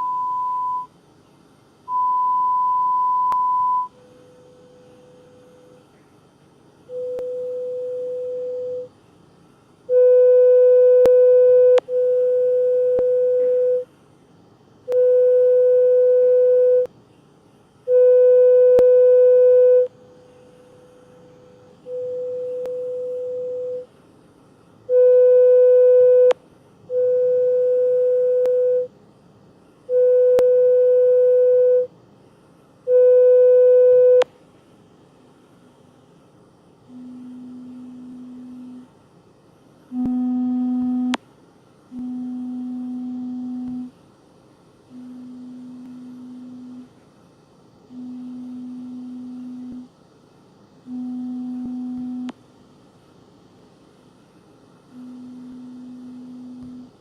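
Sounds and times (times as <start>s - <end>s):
pure test tone beeps: 0.0s - 0.9s, 1.9s - 4.0s.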